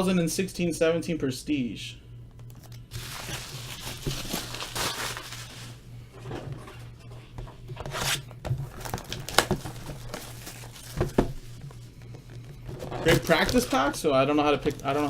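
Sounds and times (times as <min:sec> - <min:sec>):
sharp wrapper crackles: 0:02.9 - 0:05.8
wrapper tearing and crinkling: 0:02.9 - 0:05.8, 0:08.0 - 0:11.1, 0:13.0 - 0:15.0.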